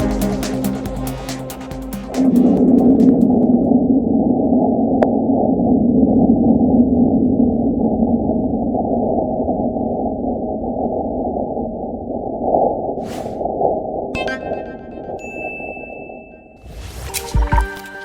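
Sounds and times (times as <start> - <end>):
short whoosh: 13.0 - 13.6.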